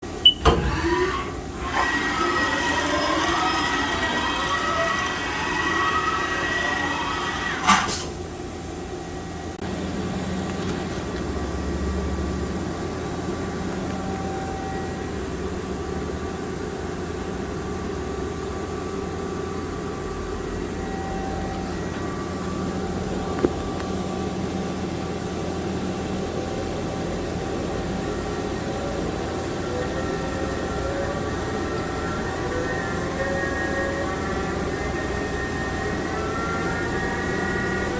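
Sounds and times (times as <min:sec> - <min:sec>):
machine hum: 0:00.0 - 0:37.9.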